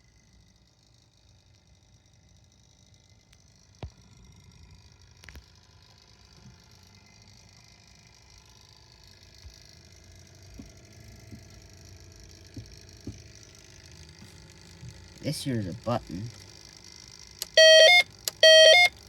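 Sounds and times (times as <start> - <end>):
cooling fans humming: 4.0 - 19.0.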